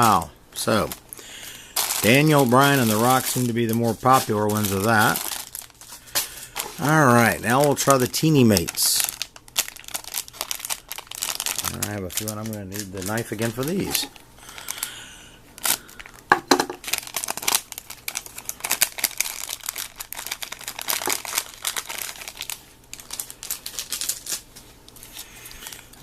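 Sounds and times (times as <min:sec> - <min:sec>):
plastic wrapper crinkling and tearing: 0:00.0 - 0:15.0, 0:15.6 - 0:26.0.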